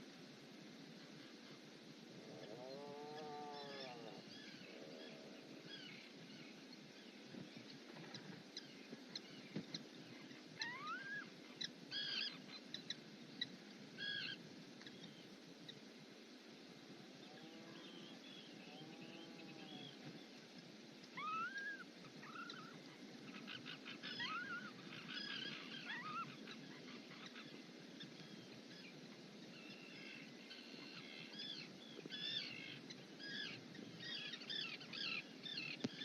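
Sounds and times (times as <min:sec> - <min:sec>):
bird calling low and drawn-out: 0:10.6 - 0:13.0, 0:21.1 - 0:28.9
rising bird whistle: 0:21.2 - 0:22.8.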